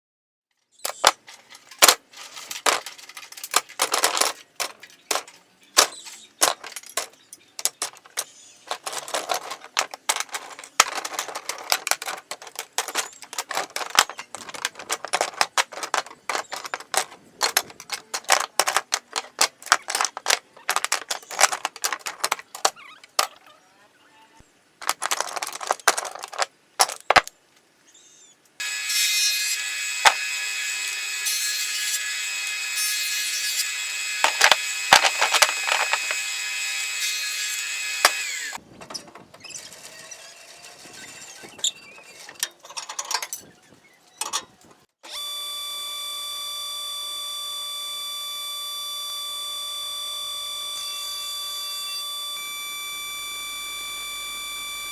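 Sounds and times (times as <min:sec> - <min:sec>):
small hard objects clattering: 0:00.8 - 0:23.4, 0:24.8 - 0:27.4, 0:30.0 - 0:30.3, 0:34.2 - 0:36.4, 0:37.9 - 0:38.7
power tool running: 0:05.1 - 0:22.7, 0:28.6 - 0:38.6, 0:45.0 - 0:54.9.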